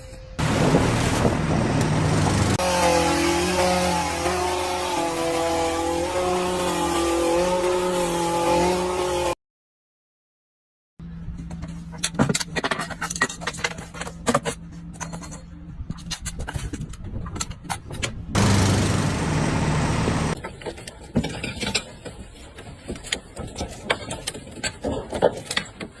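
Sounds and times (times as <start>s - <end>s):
machine engine running: 0.4s - 2.6s, 18.4s - 20.4s.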